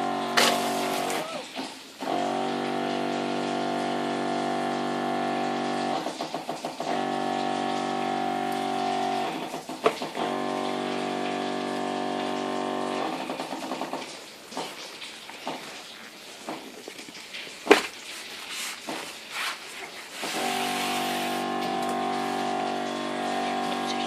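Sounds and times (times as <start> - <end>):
steady pitched motor hum: 2.0 - 6.0, 10.2 - 13.1, 20.3 - 24.0.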